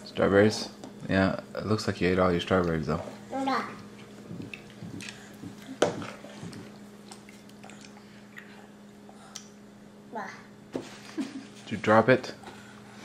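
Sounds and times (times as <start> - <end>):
child chewing wetly: 3.9 - 9.6.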